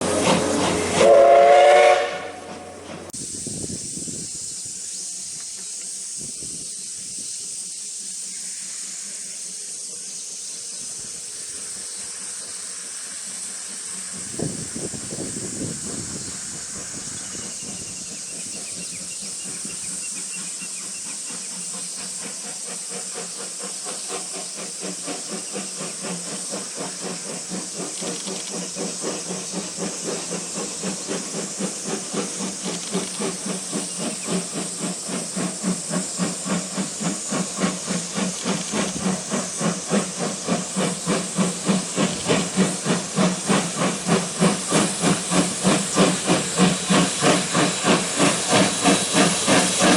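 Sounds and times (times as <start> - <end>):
steam hissing: 0.0 - 49.9
steam locomotive exhaust chuffing: 0.0 - 49.9.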